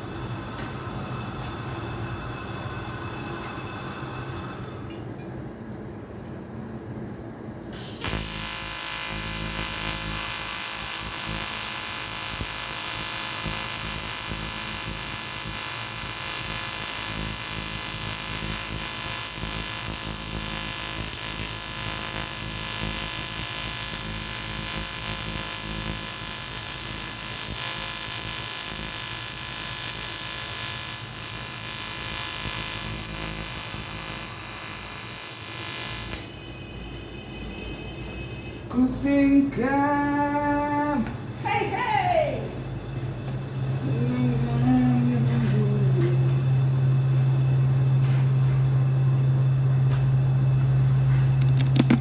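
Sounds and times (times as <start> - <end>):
welding arc buzzing: 7.6 - 52.0.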